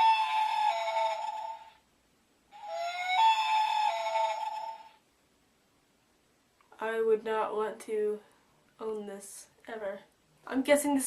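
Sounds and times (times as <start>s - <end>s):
electronic bird call: 0.0s - 1.8s, 2.6s - 5.0s.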